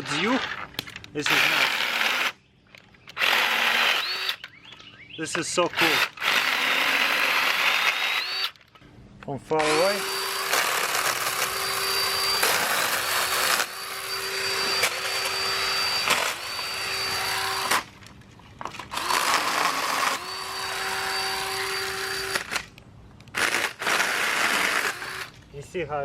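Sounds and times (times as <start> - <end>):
electric chainsaw whining: 1.2 - 2.4, 3.1 - 4.5, 5.7 - 8.7, 9.6 - 18.0, 18.8 - 22.7, 23.3 - 25.4.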